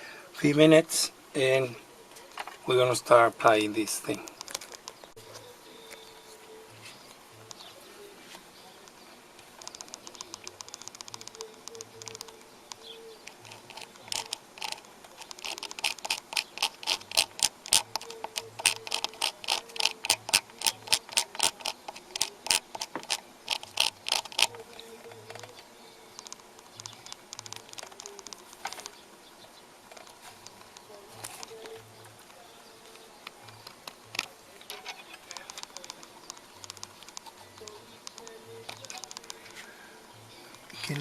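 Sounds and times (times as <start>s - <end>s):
sharp mechanical clicks: 9.5s - 29.0s, 32.9s - 39.5s.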